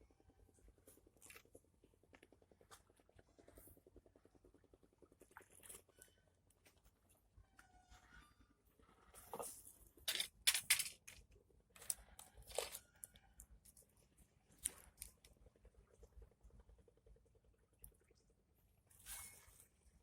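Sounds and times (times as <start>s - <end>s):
rustling and scraping: 18.9s - 19.9s.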